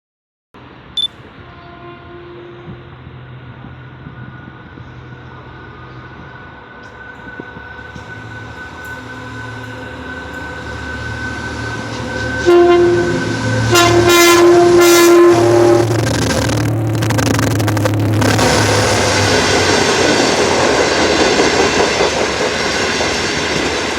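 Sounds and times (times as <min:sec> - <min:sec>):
diesel locomotive engine: 0:00.6 - 0:23.9
locomotive horn blasts: 0:01.4 - 0:03.1, 0:11.1 - 0:16.5.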